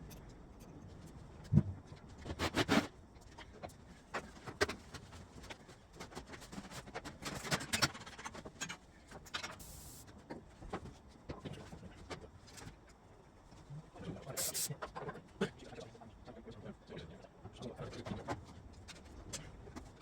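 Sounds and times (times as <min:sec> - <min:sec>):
short hiss: 0:14.4 - 0:14.7.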